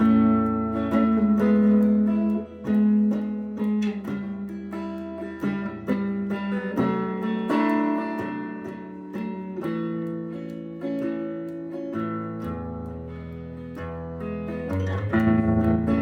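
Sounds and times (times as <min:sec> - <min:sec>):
acoustic guitar picking and strumming: 0:00.0 - 0:16.0.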